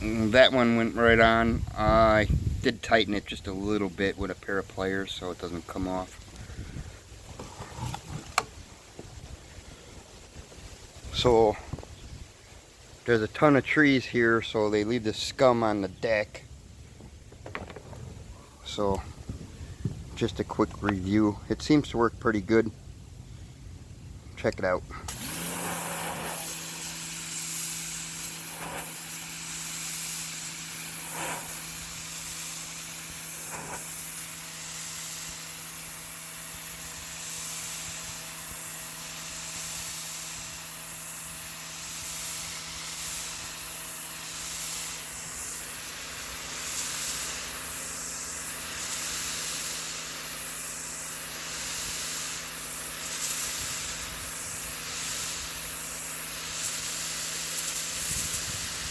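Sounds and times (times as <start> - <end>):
pressure washer motor humming: 25.1 - 58.9
water jet hissing: 25.1 - 58.9.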